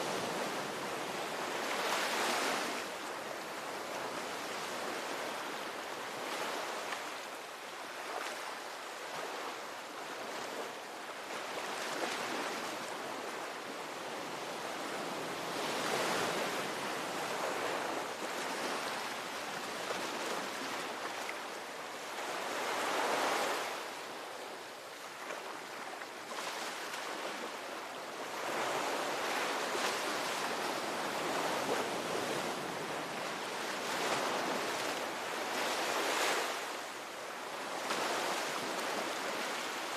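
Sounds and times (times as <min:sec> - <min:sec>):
ocean waves breaking: 0:28.3 - 0:36.8.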